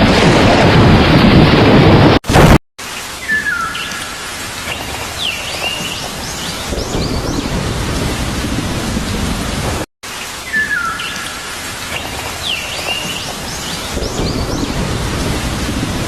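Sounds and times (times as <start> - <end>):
low rumble of thunder: 0.0 - 2.5, 6.7 - 9.8, 13.9 - 16.0
steady rain: 0.0 - 16.0
birds chirping: 3.2 - 7.6, 10.4 - 14.8.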